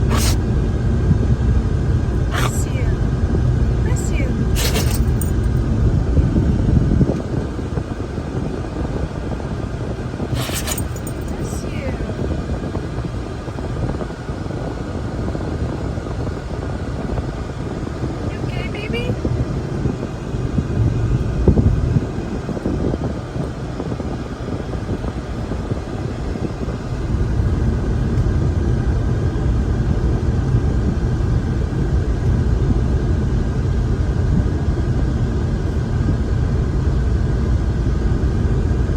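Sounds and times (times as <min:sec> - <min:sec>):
steady low rumble: 0:00.0 - 0:38.9.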